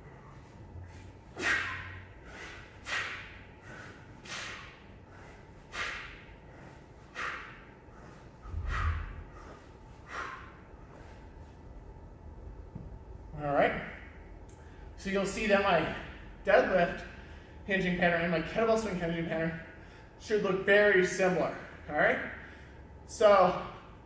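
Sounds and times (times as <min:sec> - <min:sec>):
sharp hissing exhalations: 0:01.4 - 0:06.2.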